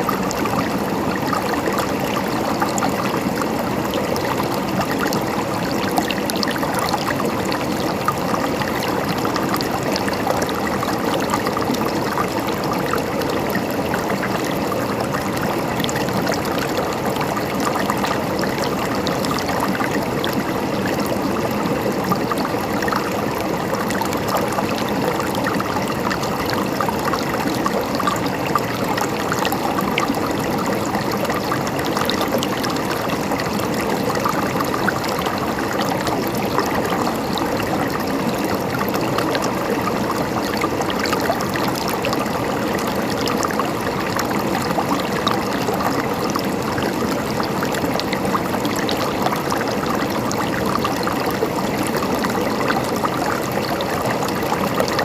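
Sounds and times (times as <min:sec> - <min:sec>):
river water flowing over stones: 0:00.0 - 0:55.0.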